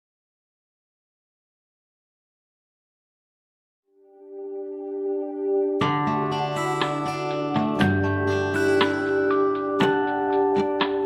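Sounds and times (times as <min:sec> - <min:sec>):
plucked acoustic guitar music: 0:05.8 - 0:11.0.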